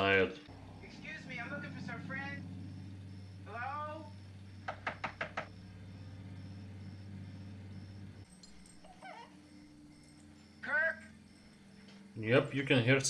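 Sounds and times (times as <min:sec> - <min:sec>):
low steady hum: 0:00.0 - 0:13.0
knocks on a door: 0:04.6 - 0:05.5.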